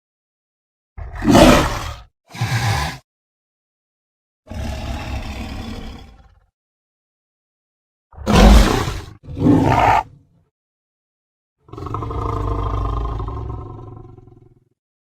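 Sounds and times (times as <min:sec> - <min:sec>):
big cat roaring: 0:01.0 - 0:03.0, 0:04.5 - 0:06.5, 0:08.2 - 0:10.3, 0:11.6 - 0:14.8.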